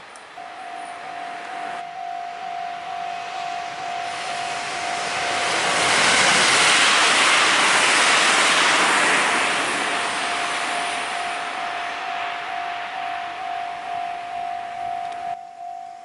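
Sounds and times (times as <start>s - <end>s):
train passing: 0.0s - 16.0s
level crossing warning bell: 0.4s - 5.6s, 10.1s - 16.0s.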